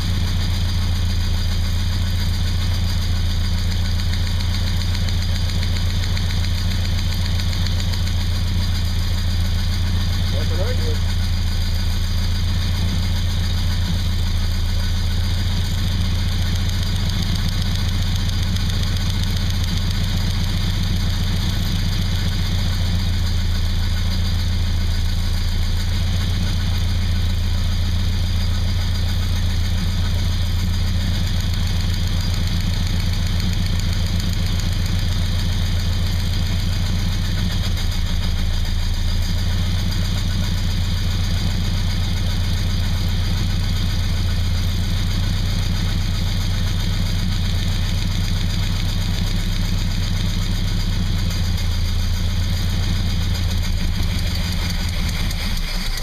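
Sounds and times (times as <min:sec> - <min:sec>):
car engine idling: 0:00.0 - 0:56.0.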